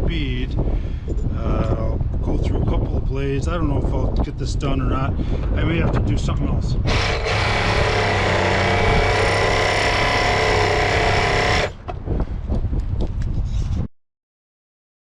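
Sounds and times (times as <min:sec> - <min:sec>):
jigsaw sawing steel: 0:06.9 - 0:11.8.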